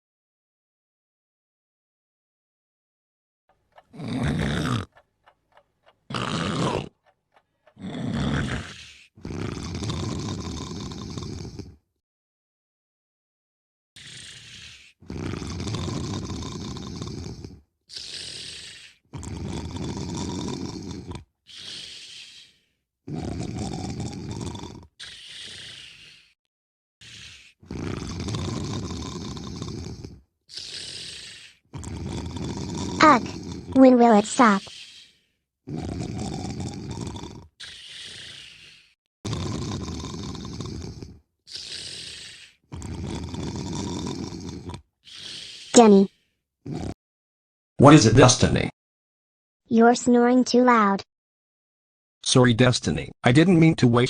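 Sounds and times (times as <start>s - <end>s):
person snoring: 3.9s - 4.9s, 6.1s - 7.0s, 7.7s - 11.8s, 14.0s - 26.4s, 27.0s - 47.0s
hissing breath: 21.5s - 22.8s, 25.0s - 26.4s, 27.0s - 27.8s, 29.4s - 31.7s, 34.5s - 35.4s, 37.6s - 39.0s, 40.0s - 42.8s, 45.0s - 45.8s.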